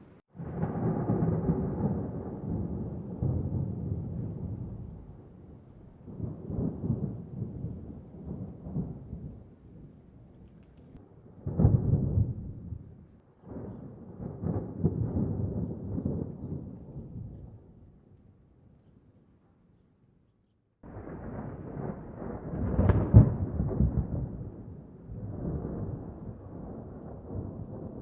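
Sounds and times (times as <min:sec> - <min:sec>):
thunder clap: 0:00.4 - 0:05.2, 0:11.4 - 0:17.4, 0:20.8 - 0:28.0
distant rolling thunder: 0:00.4 - 0:10.4, 0:11.2 - 0:17.9, 0:20.8 - 0:28.0.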